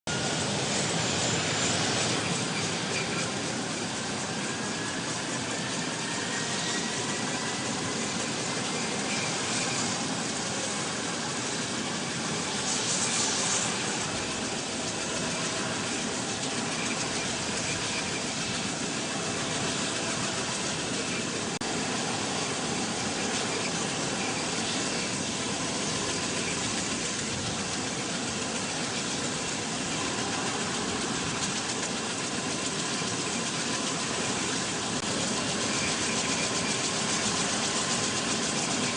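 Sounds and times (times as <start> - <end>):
aircraft rotors rushing: 0.1 - 38.9
turbine whine: 0.1 - 38.9.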